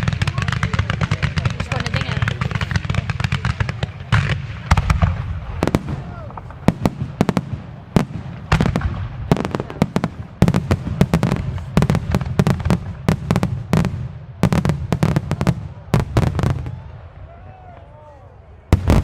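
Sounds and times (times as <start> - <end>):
fireworks bursting: 0.0 - 17.0, 18.7 - 19.0.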